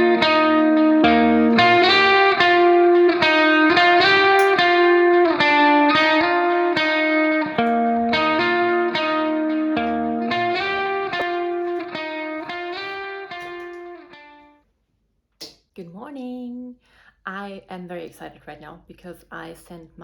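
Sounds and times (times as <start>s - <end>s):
plucked guitar melody: 0.0s - 14.5s.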